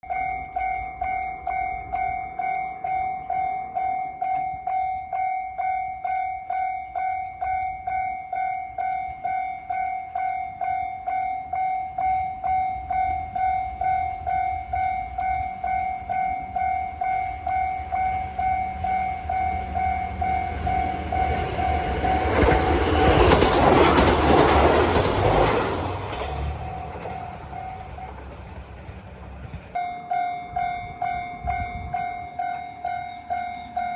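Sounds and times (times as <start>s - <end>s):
railroad crossing bell ringing: 0.0s - 28.9s, 29.7s - 33.9s
train rushing past: 11.5s - 33.9s.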